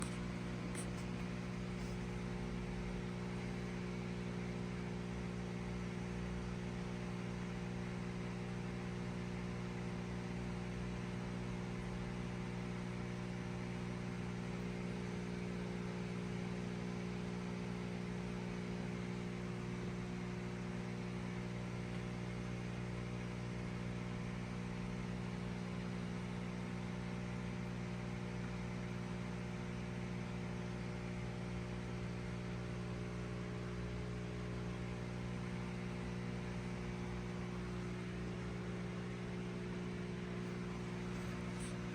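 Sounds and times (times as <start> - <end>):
aquarium equipment humming: 0.0 - 41.9.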